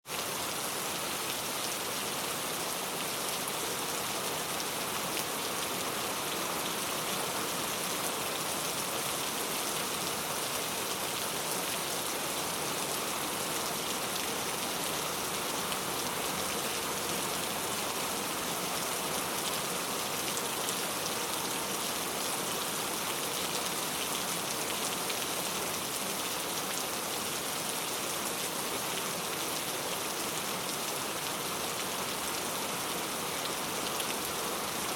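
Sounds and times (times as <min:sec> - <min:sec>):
heavy rain: 0:00.1 - 0:34.9.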